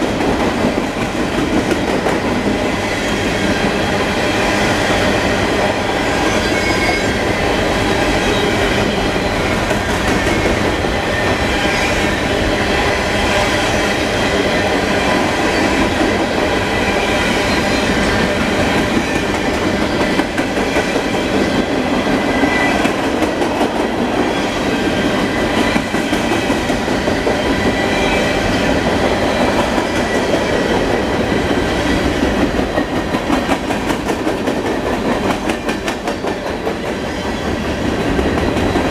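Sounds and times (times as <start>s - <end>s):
clickety-clack over rail joints: 0.0s - 3.8s, 18.2s - 38.9s
train wheels rumbling on rails: 0.0s - 38.9s.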